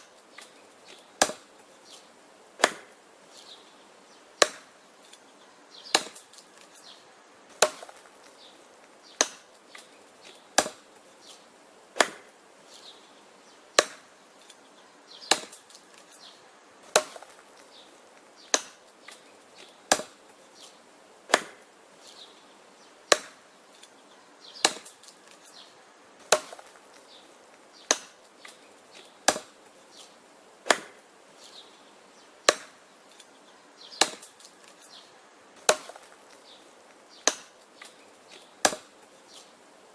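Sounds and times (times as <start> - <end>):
axe chopping wood: 0.3 - 1.6, 2.6 - 3.0, 4.4 - 5.2, 5.9 - 6.7, 7.5 - 8.4, 9.1 - 11.1, 12.0 - 12.4, 13.8 - 14.2, 15.2 - 16.2, 16.8 - 21.7, 23.1 - 23.8, 24.6 - 25.5, 26.2 - 29.7, 30.6 - 31.0, 32.4 - 32.9, 33.9 - 34.9, 35.6 - 36.6, 37.2 - 39.5.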